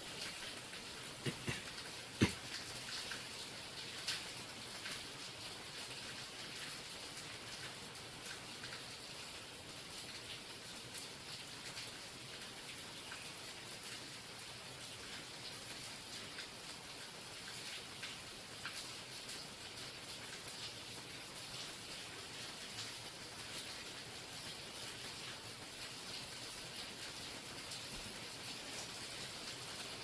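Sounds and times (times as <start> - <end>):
steady rain hissing: 0.0 - 30.0
raindrops tapping: 0.1 - 5.0.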